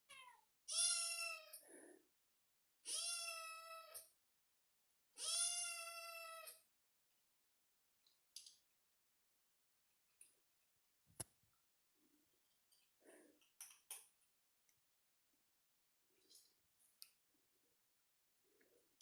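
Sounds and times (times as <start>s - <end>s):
kitten meowing: 0.1s - 1.6s, 2.8s - 4.0s, 5.2s - 6.5s.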